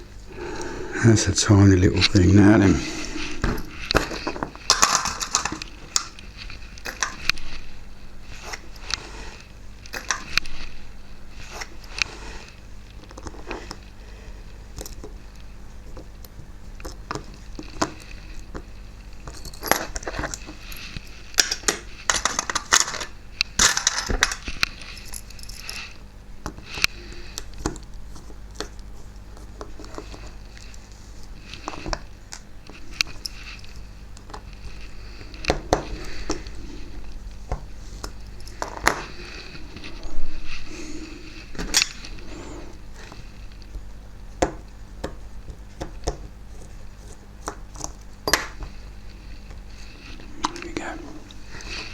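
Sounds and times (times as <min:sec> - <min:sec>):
steady low hum: 0:00.0 - 0:51.9
tools clicking and scraping parts: 0:01.9 - 0:07.7, 0:08.3 - 0:10.8, 0:15.9 - 0:43.8.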